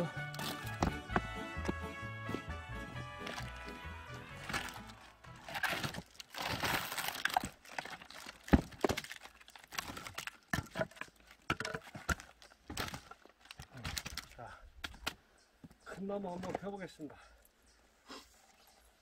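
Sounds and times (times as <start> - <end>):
firewood knocks and cracks: 0.3 - 1.8, 3.2 - 15.2.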